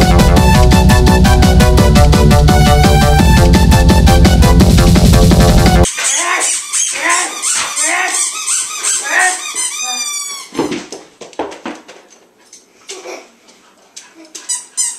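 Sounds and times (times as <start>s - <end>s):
dog squeaking: 5.9s - 10.6s, 14.3s - 14.9s.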